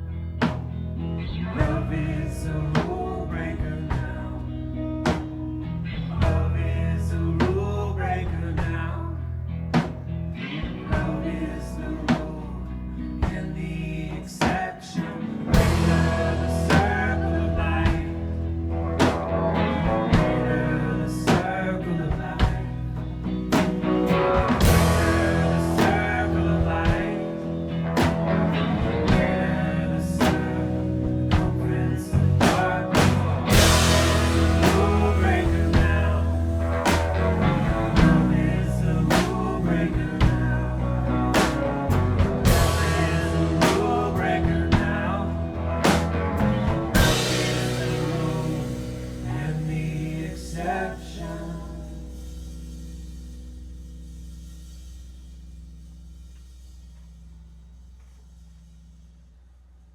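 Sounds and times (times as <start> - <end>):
rock band playing live: 0.0 - 53.8
drum kit beat: 15.5 - 20.7, 22.2 - 49.4.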